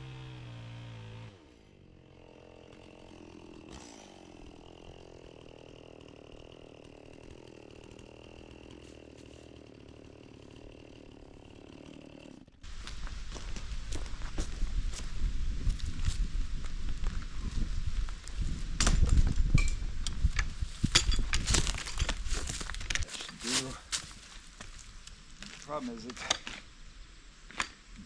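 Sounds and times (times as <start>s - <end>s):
chainsaw revving and idling: 0.0s - 14.5s.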